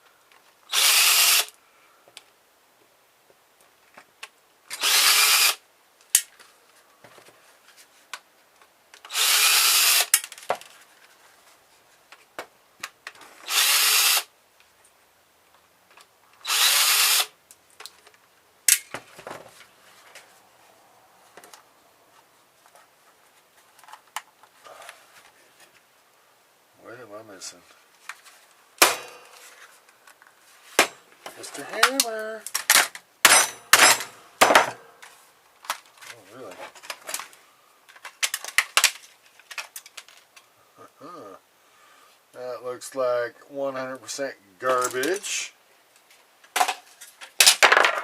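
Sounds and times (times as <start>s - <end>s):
power drill running: 0.7s - 1.5s, 4.8s - 5.6s, 9.1s - 10.1s, 13.4s - 14.3s, 16.4s - 17.3s.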